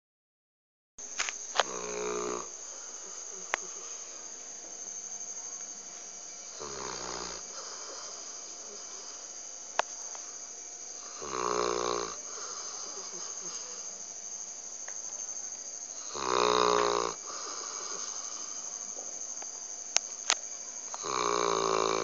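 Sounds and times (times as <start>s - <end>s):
dog snoring: 1.6s - 4.2s, 6.5s - 9.4s, 11.0s - 13.9s, 15.9s - 18.7s, 21.0s - 22.0s.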